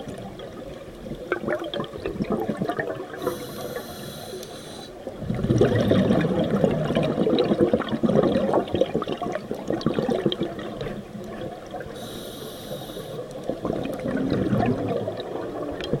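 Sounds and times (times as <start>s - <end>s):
bubbles gurgling underwater: 0.0s - 3.4s, 5.1s - 12.1s, 13.2s - 16.0s
regulator inhalation hiss: 3.2s - 5.0s, 12.0s - 13.3s.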